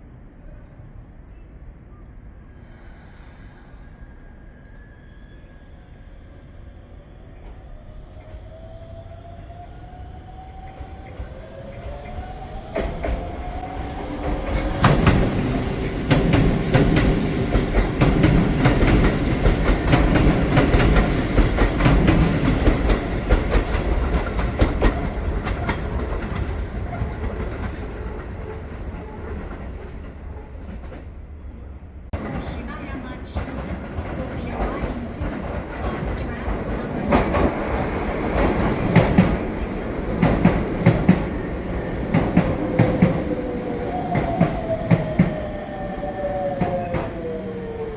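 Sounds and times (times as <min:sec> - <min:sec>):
electric train passing: 0:02.9 - 0:30.4, 0:32.2 - 0:47.9.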